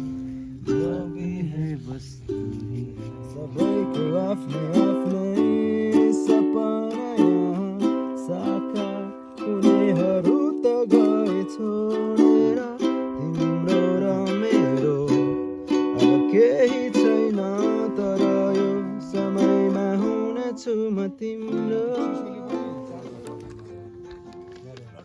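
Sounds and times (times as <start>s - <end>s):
string instrument strumming chords: 0.0s - 25.0s.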